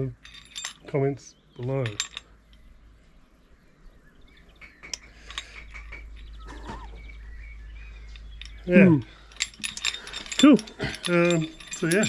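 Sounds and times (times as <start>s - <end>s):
small metal parts clinking: 0.0s - 1.0s, 1.6s - 2.8s, 4.8s - 12.0s
low steady hum: 0.0s - 12.0s.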